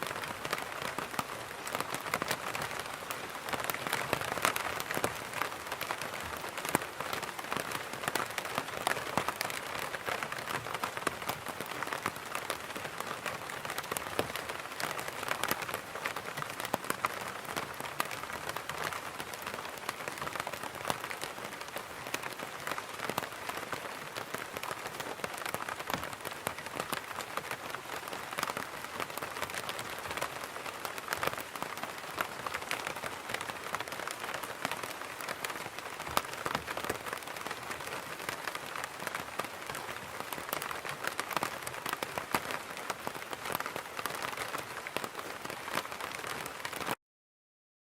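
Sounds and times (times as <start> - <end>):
rain pattering on an umbrella: 0.0 - 47.0.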